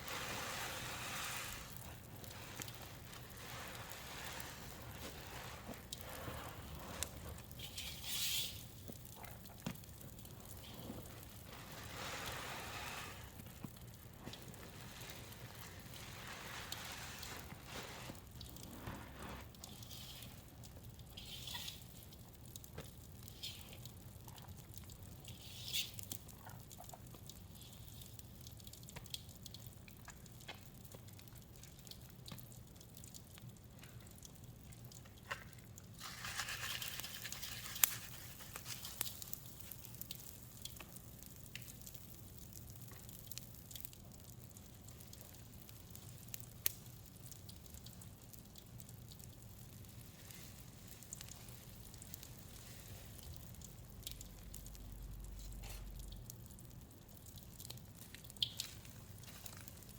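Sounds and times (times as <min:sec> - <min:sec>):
wet sponge squelching: 0:00.0 - 0:09.1, 0:10.5 - 0:20.6
bath crackles popping and fizzing: 0:00.0 - 0:59.9.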